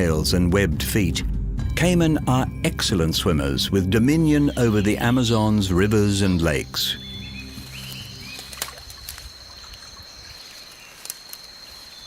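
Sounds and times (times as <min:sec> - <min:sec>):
low background music: 0:00.0 - 0:09.0
bird-like chirps: 0:04.2 - 0:12.0
water trickling and lapping: 0:07.1 - 0:12.0.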